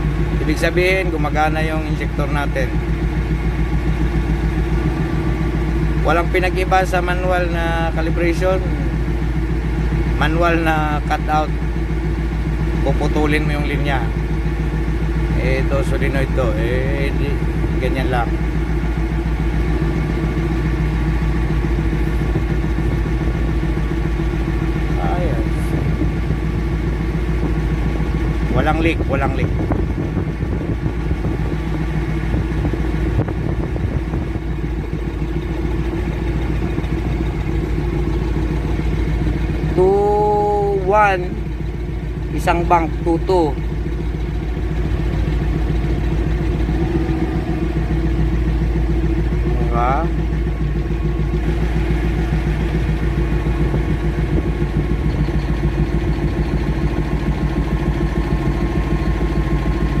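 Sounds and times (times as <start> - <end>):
diesel engine idling: 0.0 - 60.0.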